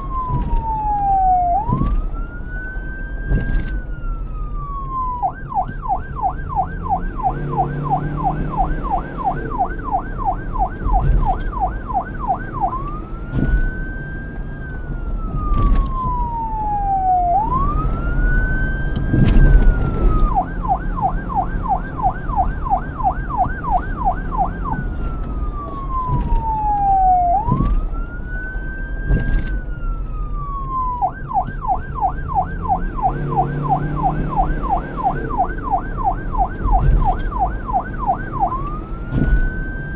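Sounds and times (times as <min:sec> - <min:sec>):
police siren yelp and wail: 0:00.0 - 0:39.9.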